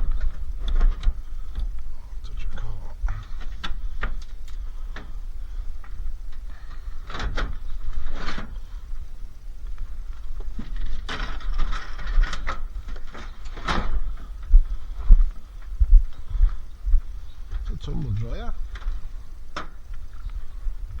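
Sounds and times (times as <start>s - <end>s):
scrap scraping and clattering: 10.5s - 14.3s.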